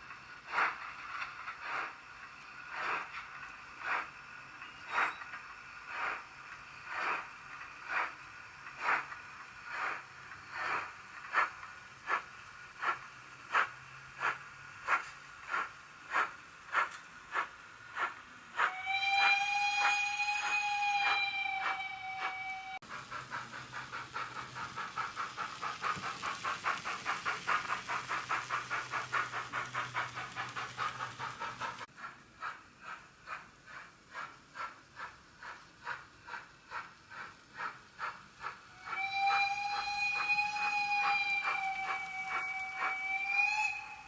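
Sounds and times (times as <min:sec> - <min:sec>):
steam chuffs from small speaker: 0:00.0 - 0:44.0
steam whistle: 0:18.0 - 0:22.9, 0:38.7 - 0:44.0.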